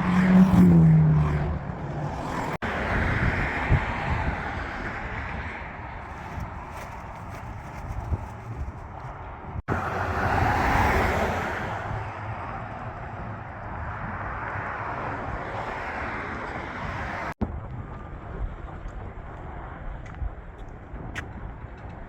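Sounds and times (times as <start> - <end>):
passing vehicle: 0.0 - 6.6, 9.6 - 17.4
road hum: 0.0 - 22.0.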